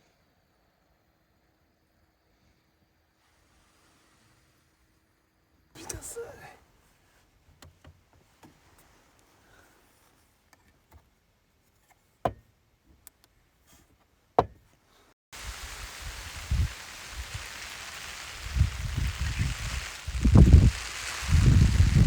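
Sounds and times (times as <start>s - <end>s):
steady rain hiss: 3.0s - 7.2s, 15.4s - 22.0s
low thumps: 15.4s - 22.0s.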